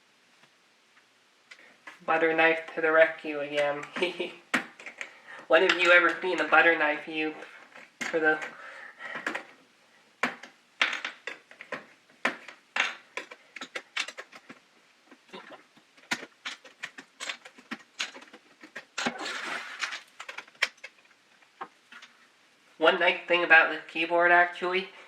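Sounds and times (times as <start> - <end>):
plastic keycaps clicking: 11.1 - 15.2, 16.0 - 19.1.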